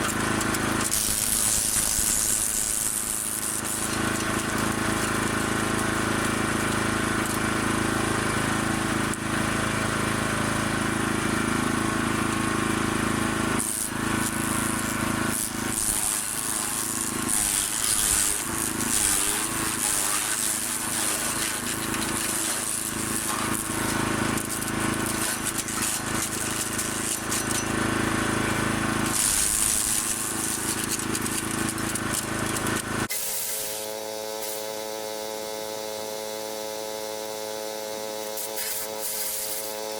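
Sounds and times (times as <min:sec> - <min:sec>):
wood chipper shredding: 0:00.0 - 0:36.8, 0:37.7 - 0:39.9
wood chipper engine running: 0:00.0 - 0:39.9.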